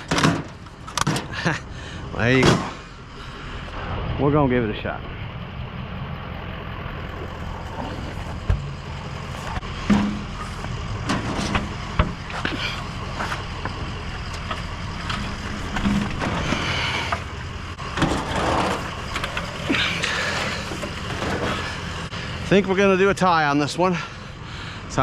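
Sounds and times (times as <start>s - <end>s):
vehicle engine idling: 0.0s - 25.0s
scrap knocking and clunking: 7.6s - 22.1s.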